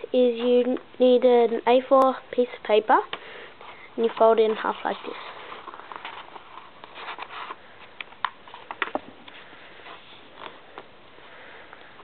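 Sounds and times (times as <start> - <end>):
paper rustling and creasing: 3.6 - 11.0.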